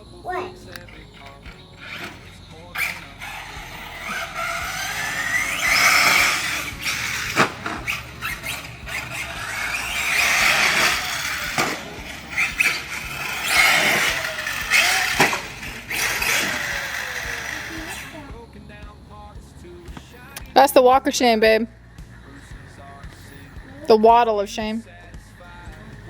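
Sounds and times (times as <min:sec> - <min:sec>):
electric motor whining: 0:00.0 - 0:18.4.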